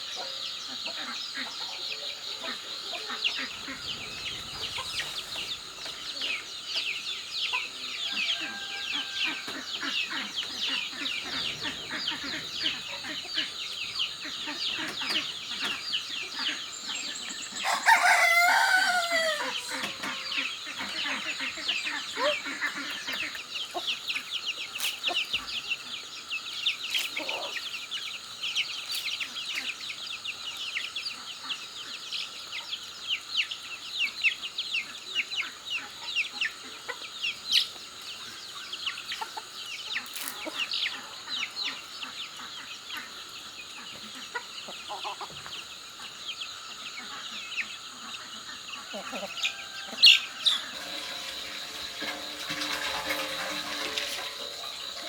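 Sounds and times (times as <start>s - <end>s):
chickens chirping and clucking: 0.0s - 55.0s
rooster crowing: 8.0s - 9.8s, 17.5s - 20.5s, 49.0s - 55.0s.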